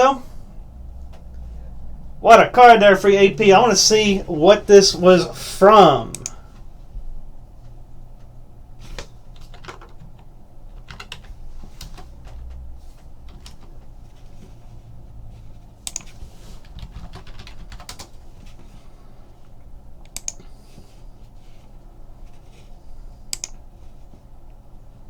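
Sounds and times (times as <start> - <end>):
steady low hum: 0.0 - 25.0
computer keyboard typing: 9.3 - 12.5, 13.3 - 13.7, 15.8 - 18.2, 20.1 - 20.4, 23.3 - 23.6.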